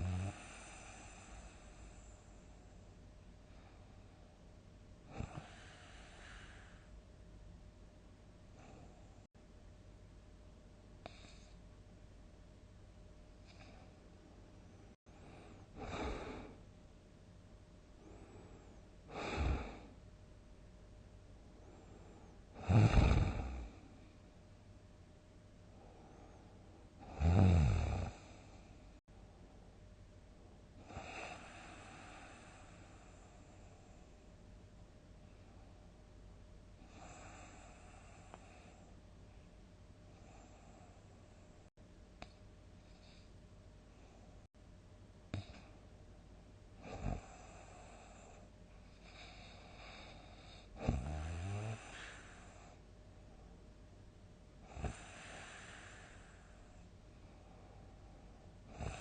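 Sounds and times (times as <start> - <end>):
person snoring: 0.0 - 2.0, 5.1 - 6.9, 15.8 - 16.6, 19.1 - 20.0, 22.6 - 23.9, 27.0 - 28.6, 49.2 - 52.8, 54.6 - 56.7
soft breathy breath: 0.0 - 4.5, 5.1 - 7.0, 13.4 - 16.7, 30.8 - 34.3, 36.8 - 39.5, 40.1 - 44.5, 46.8 - 53.6, 54.6 - 59.0.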